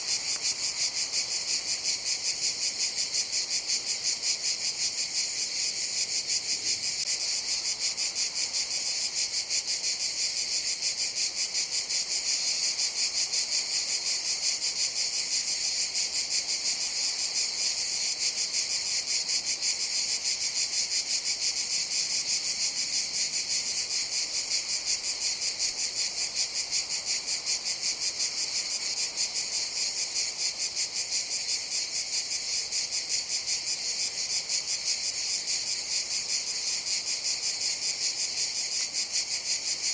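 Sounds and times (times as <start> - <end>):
cicadas buzzing: 0.0 - 39.9.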